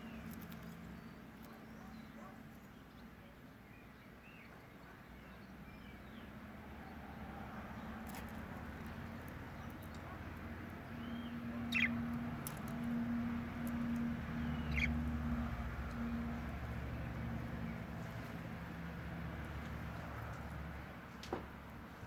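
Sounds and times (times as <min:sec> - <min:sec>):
budgerigars chirping: 0:08.8 - 0:13.0, 0:13.6 - 0:17.2.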